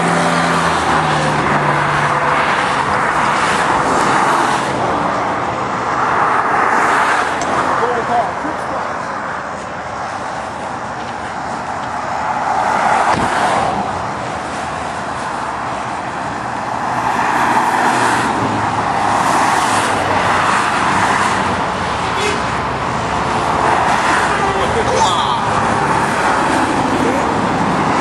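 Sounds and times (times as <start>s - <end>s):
vehicles passing: 0.0s - 28.0s.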